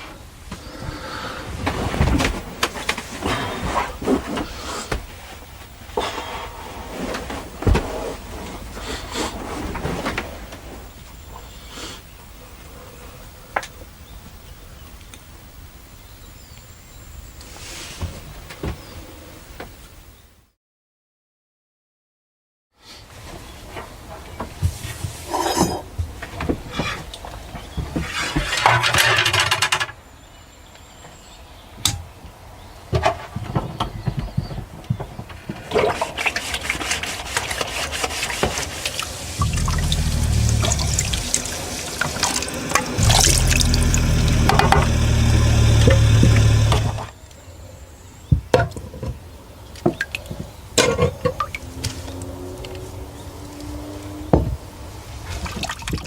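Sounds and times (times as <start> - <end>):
water running into a sink: 39.0 - 47.1
low steady hum: 39.3 - 47.1.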